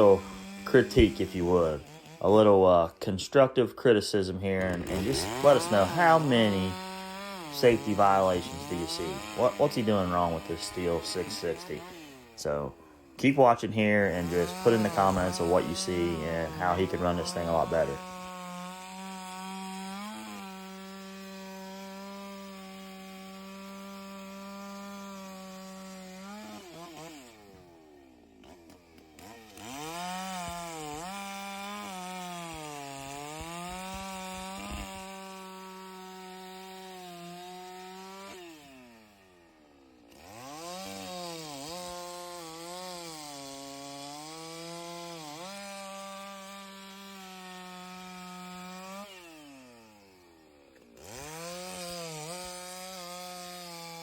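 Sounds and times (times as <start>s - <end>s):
chainsaw cutting logs: 0.0s - 54.0s.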